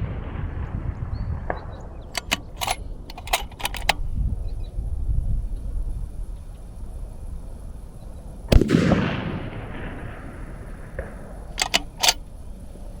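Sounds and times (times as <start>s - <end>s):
rifle shot echoing: 0.0s - 4.0s, 8.5s - 12.5s
sharp clicks: 2.1s - 4.1s, 11.0s - 12.4s.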